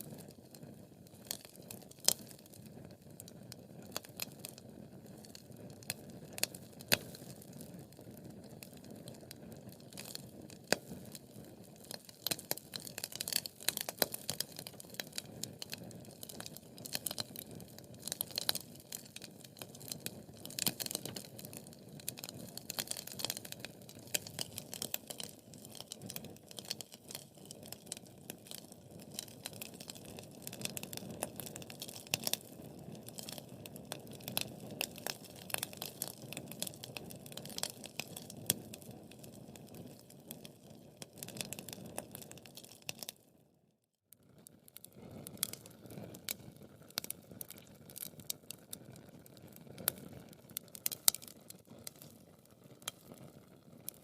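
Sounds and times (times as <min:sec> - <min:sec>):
wood fire crackling and popping: 0:00.0 - 0:43.2, 0:44.1 - 0:54.0.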